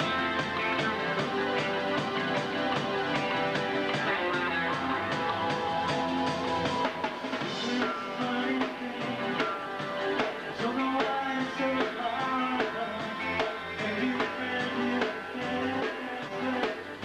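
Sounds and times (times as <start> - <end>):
bass guitar: 0.0 - 17.0
drum kit beat: 0.0 - 17.0
electric guitars: 0.0 - 17.0.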